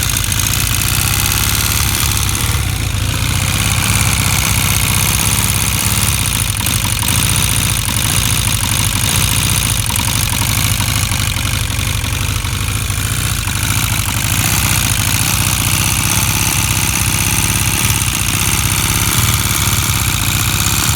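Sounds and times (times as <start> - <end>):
motorcycle engine idling: 0.0 - 20.9.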